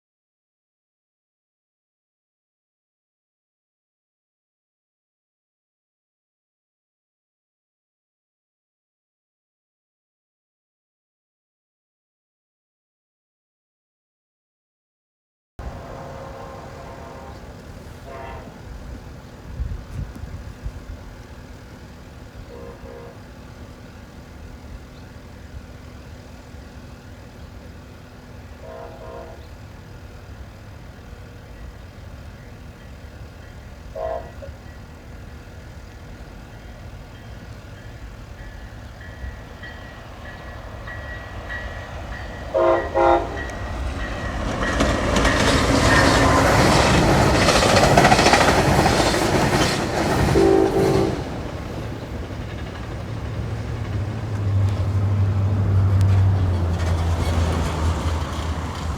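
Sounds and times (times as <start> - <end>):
train horn blasts: 15.6 - 19.0, 22.4 - 23.4, 28.4 - 29.7, 33.6 - 34.9, 38.4 - 47.2, 50.0 - 52.1
train passing with wheel clatter: 15.6 - 58.9.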